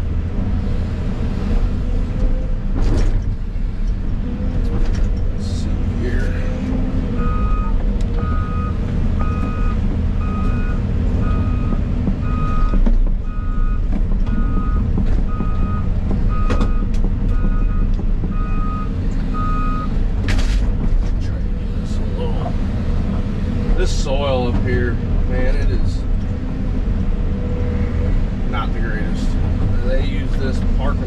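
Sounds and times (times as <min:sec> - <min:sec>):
excavator diesel engine rumble: 0:00.0 - 0:31.0
backup alarm beeping: 0:07.2 - 0:19.9.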